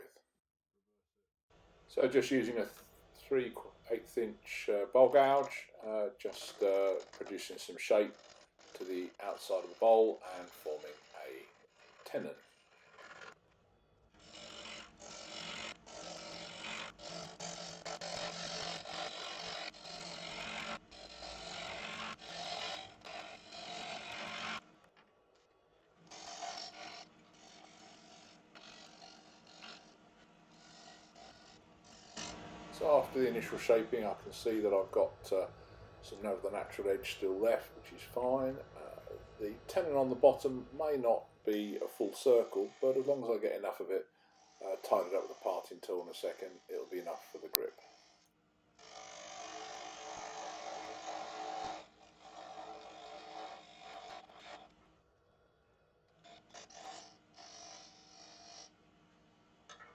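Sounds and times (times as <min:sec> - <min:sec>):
parting tool cutting wood on lathe: 0:02.4 - 0:13.4, 0:14.1 - 0:25.0, 0:26.0 - 0:54.9, 0:56.2 - 0:58.8
wood lathe gouge cutting hiss: 0:48.9 - 0:54.2.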